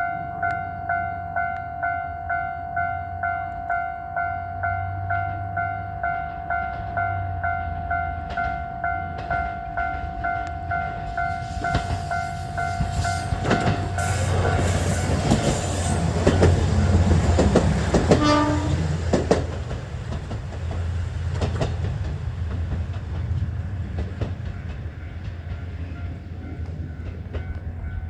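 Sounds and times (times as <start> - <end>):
diesel train engine rumbling: 0.0 - 28.0
train wheels clicking over rail joints: 8.2 - 28.0
train horn blast: 9.7 - 19.1.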